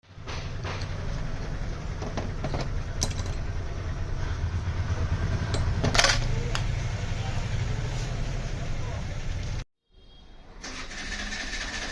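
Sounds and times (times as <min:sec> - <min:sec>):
low engine rumble: 0:00.1 - 0:09.6.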